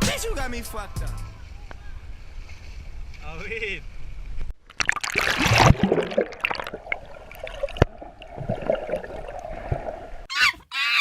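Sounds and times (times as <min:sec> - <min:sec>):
water splashing and gurgling: 0:04.6 - 0:10.3
loud splash: 0:04.7 - 0:10.0.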